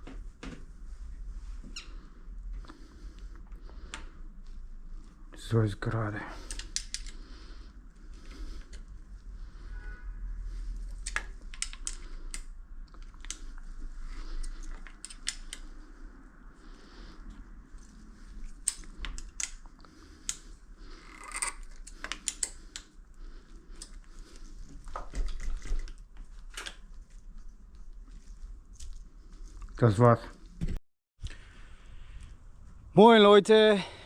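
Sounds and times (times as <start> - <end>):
hand tools and metal parts clicking: 6.4 - 7.2, 10.9 - 13.6, 14.4 - 15.7, 18.5 - 22.9.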